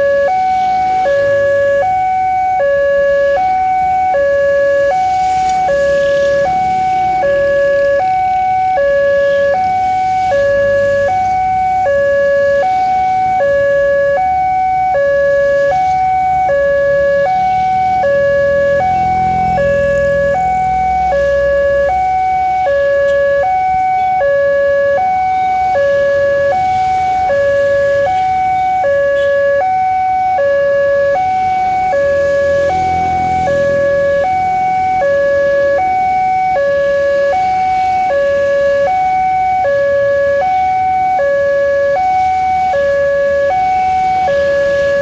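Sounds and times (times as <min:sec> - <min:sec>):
two-tone level crossing alarm: 0:00.0 - 0:45.0
vehicle rumbling past: 0:04.5 - 0:23.7, 0:30.8 - 0:37.2.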